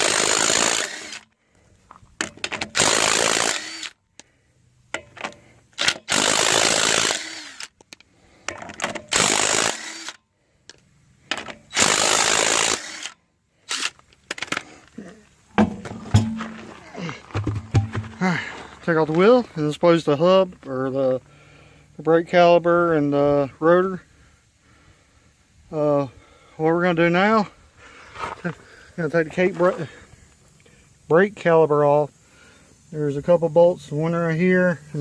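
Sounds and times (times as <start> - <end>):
impact wrench buzzing: 0.0 - 1.4, 2.3 - 4.0, 5.0 - 7.8, 8.5 - 10.2, 11.3 - 14.0, 15.5 - 16.7.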